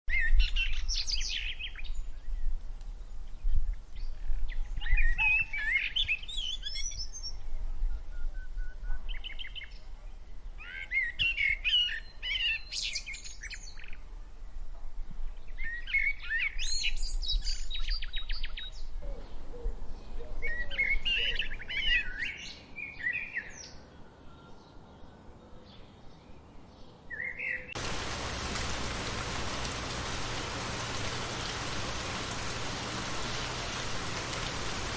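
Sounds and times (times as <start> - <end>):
rain falling: 27.8 - 34.9
songbirds singing: 27.8 - 34.9.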